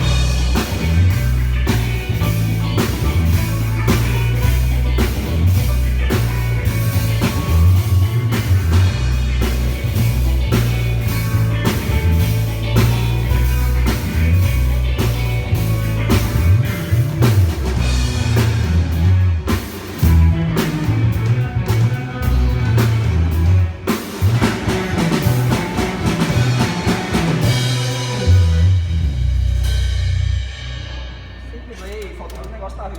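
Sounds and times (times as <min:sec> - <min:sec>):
heavy bass line: 0:00.0 - 0:32.9
rock band playing live: 0:00.0 - 0:32.9.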